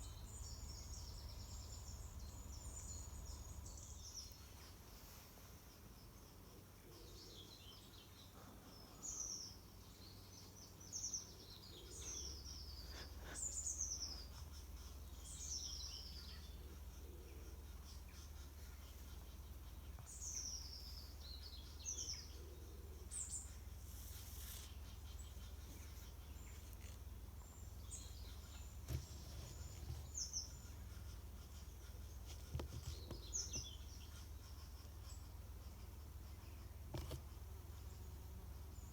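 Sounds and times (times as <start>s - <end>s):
small birds calling: 0.0s - 38.9s.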